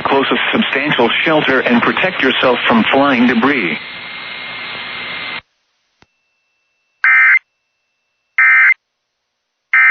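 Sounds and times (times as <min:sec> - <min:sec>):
radio static hiss: 0:00.0 - 0:05.5.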